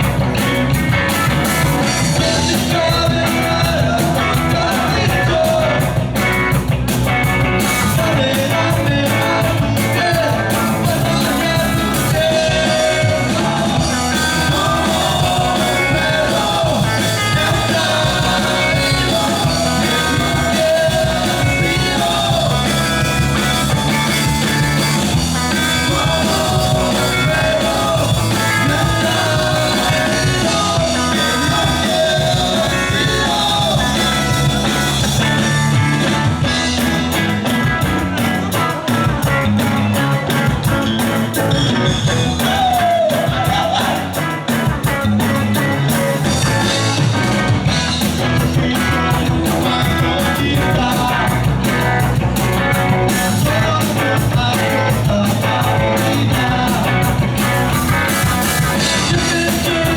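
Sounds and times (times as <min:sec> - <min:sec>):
rock band playing live: 0:00.0 - 0:59.9
person singing: 0:01.8 - 0:06.2, 0:07.8 - 0:37.2, 0:41.6 - 0:44.4, 0:48.0 - 0:51.9, 0:53.1 - 0:57.4, 0:58.1 - 0:59.9.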